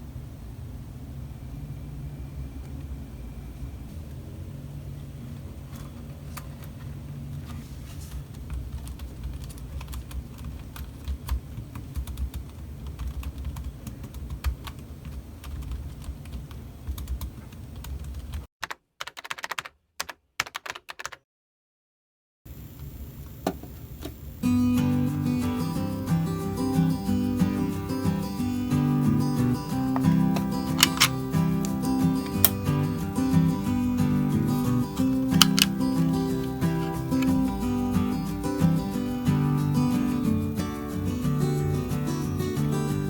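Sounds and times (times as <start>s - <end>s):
keyboard key clicks: 30.0s - 32.6s, 35.2s - 37.5s.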